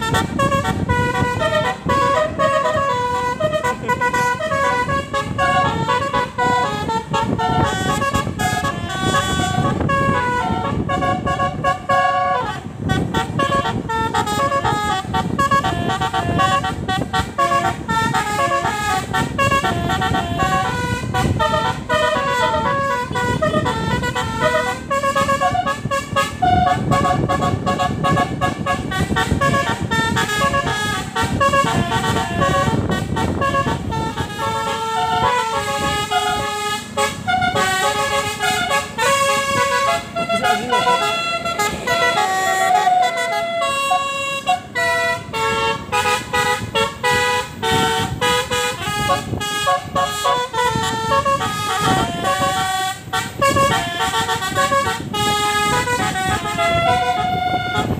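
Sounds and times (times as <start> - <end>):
multi-tone bus horn melody: 0.0 - 57.9.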